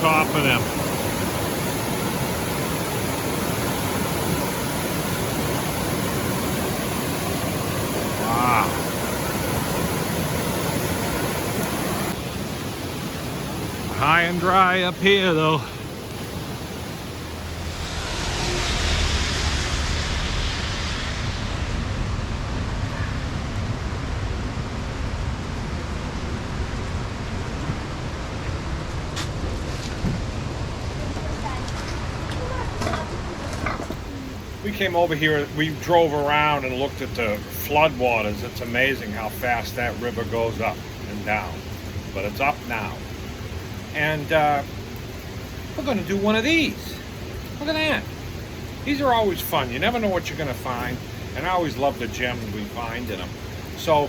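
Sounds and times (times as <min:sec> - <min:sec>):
river rushing over rocks: 0:00.0 - 0:18.0
floodwater rushing over rocks: 0:00.0 - 0:20.2, 0:26.8 - 0:54.0.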